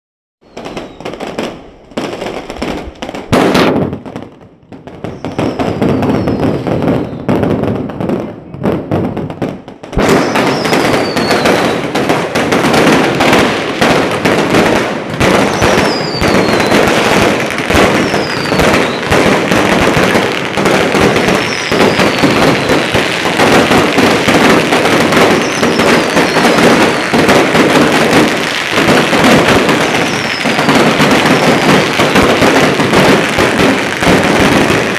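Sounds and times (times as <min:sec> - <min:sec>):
short falling whistles: 0:00.4 - 0:01.3
firecrackers crackling: 0:00.5 - 0:34.9.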